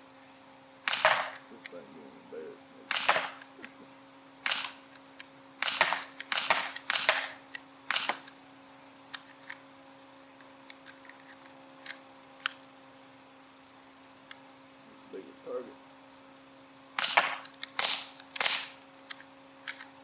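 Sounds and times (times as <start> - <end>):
pellet pistol pops: 0.9 - 1.8, 2.9 - 3.8, 4.4 - 8.4, 17.0 - 19.2.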